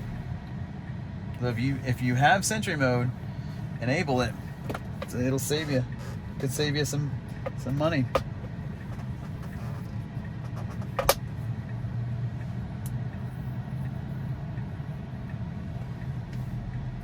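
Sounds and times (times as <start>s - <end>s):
road and tyre noise in car cabin: 0.0s - 17.0s.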